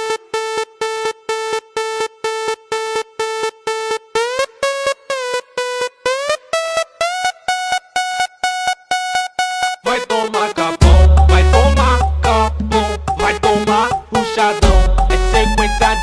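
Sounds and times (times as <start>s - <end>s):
buzzy synth lead notes: 4.4s - 16.0s.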